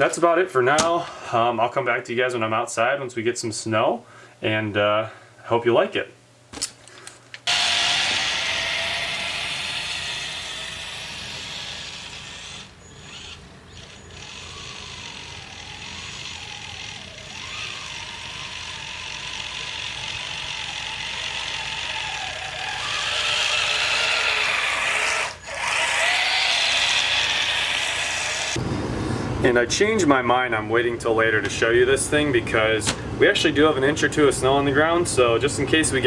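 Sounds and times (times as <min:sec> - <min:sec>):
electric motor and gear whine: 0:07.4 - 0:29.5.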